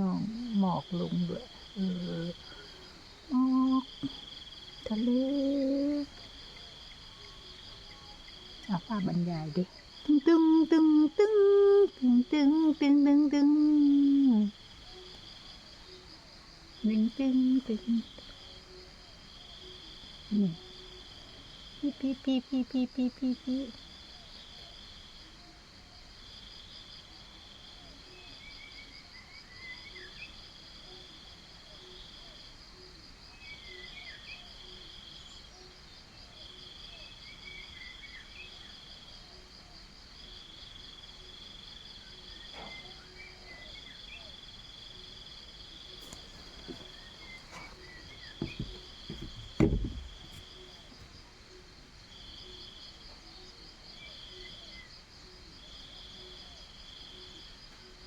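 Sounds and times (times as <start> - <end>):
crickets and cicadas trilling: 0.0 - 58.0
low thumps: 46.0 - 51.1.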